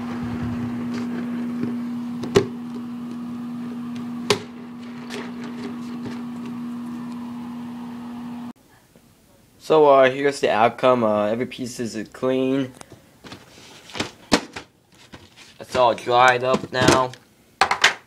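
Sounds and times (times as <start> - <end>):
steady motor hum: 0.0 - 8.6.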